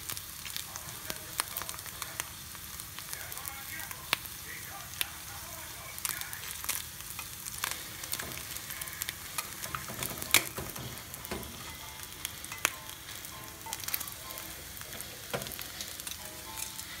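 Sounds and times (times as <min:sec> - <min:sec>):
food sizzling in oil: 0:00.0 - 0:17.0
sharp pops in frying pan: 0:09.4 - 0:11.7, 0:15.3 - 0:15.6.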